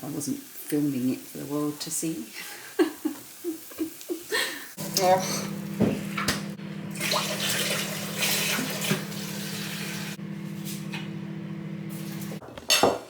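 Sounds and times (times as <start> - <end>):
steady low hum: 4.8 - 12.4
tap running into sink: 5.7 - 10.0.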